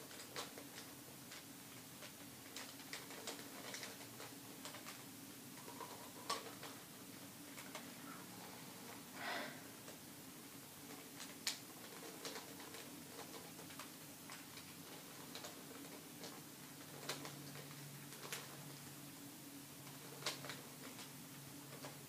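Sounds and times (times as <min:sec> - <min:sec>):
rush of breath: 0:09.1 - 0:09.7.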